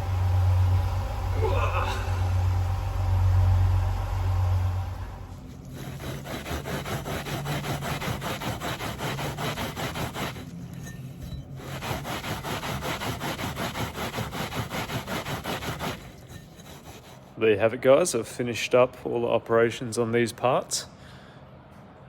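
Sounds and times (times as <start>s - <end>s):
abrasive scraping metal: 0.0s - 17.3s
low hum: 0.0s - 17.3s.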